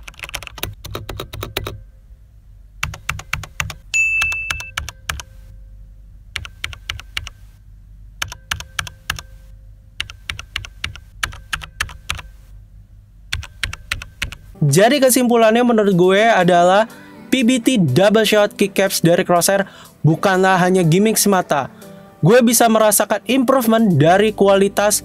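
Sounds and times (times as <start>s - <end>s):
short high beep: 3.9s - 4.7s.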